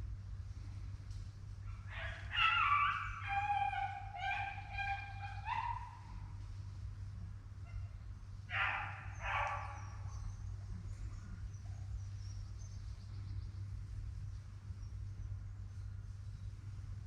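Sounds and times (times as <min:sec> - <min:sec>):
hunting dog baying: 0:01.7 - 0:06.2, 0:08.5 - 0:10.2.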